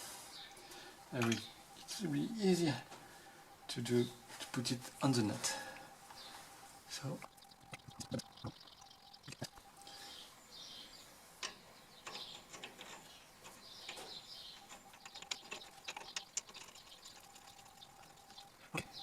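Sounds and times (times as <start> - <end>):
birds chirping: 0.0 - 19.0
faint metal clicks and taps: 11.4 - 17.2.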